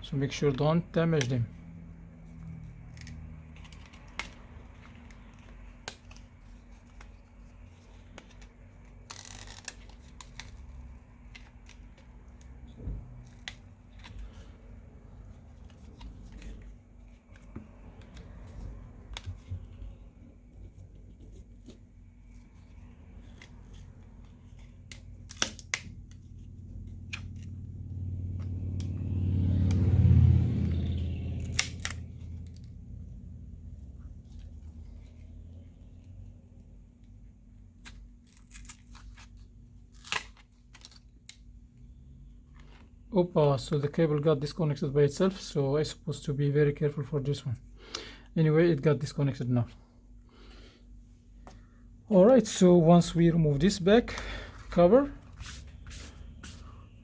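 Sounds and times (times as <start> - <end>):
adhesive scraping and tearing: 2.5 - 19.5, 30.5 - 32.8, 37.8 - 41.1.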